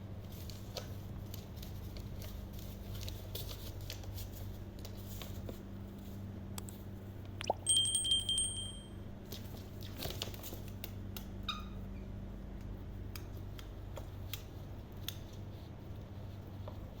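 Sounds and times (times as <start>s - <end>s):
steady low hum: 0.0s - 17.0s
light clicks and taps: 12.6s - 15.4s.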